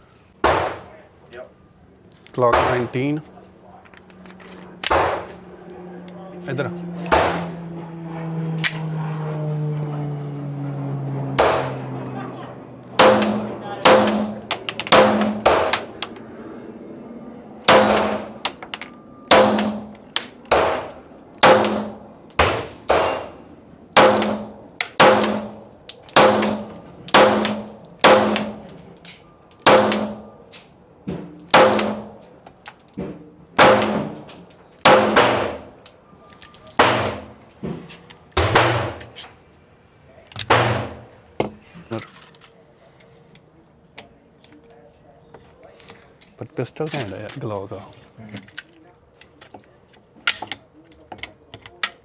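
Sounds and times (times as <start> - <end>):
pistol shots with echo: 0.4 - 0.9, 13.0 - 15.9, 17.6 - 18.5, 19.3 - 23.3, 24.0 - 28.7, 29.6 - 30.4, 31.4 - 32.2, 33.6 - 34.2, 34.8 - 35.7, 36.8 - 37.4, 38.4 - 39.0, 40.5 - 41.1.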